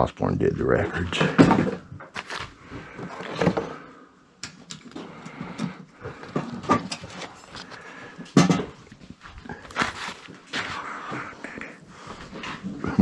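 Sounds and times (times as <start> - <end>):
objects knocking and clattering: 1.0 - 3.8, 4.4 - 10.7.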